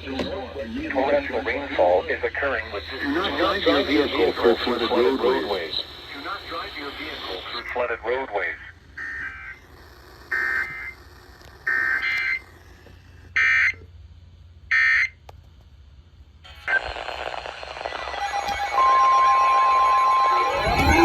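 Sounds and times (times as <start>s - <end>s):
hissy radio signal: 0.0s - 9.6s, 16.5s - 21.0s
buzzy digital data bursts: 0.8s - 7.8s, 16.5s - 21.0s
steady high alert tone: 2.5s - 7.8s, 17.9s - 21.0s.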